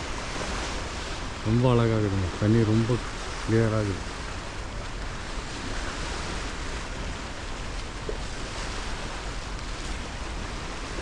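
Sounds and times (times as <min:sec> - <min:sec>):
sea water rushing past hull: 0:00.0 - 0:11.0
wind: 0:00.0 - 0:11.0.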